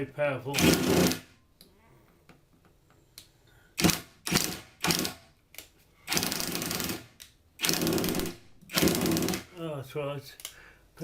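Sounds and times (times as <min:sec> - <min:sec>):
impact wrench driving screw: 0:00.6 - 0:01.3, 0:03.8 - 0:05.2, 0:06.1 - 0:09.5.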